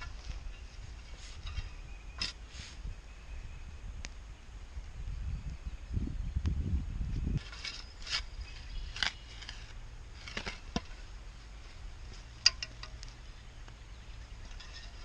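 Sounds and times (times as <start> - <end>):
broadfork scraping soil: 0.0 - 2.9, 7.4 - 12.4, 14.3 - 15.0
low steady hum: 0.0 - 15.0.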